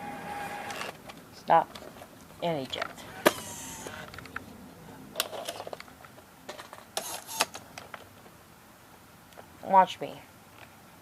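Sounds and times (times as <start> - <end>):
camcorder motor whir: 0.0 - 1.0, 3.0 - 4.2, 7.0 - 7.6.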